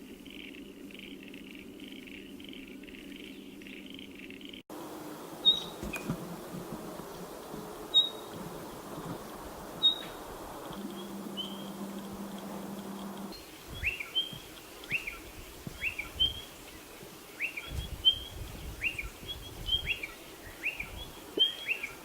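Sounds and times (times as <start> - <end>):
soft buzzy pulsing: 0.0 - 21.3
high piping bird notes: 5.4 - 6.1, 7.8 - 8.9, 9.7 - 22.0.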